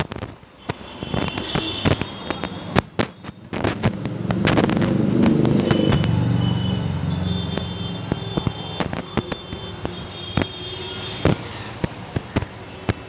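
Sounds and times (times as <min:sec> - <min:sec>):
firecrackers cracking: 0:00.0 - 0:13.0
passing vehicle rumble: 0:02.2 - 0:09.2.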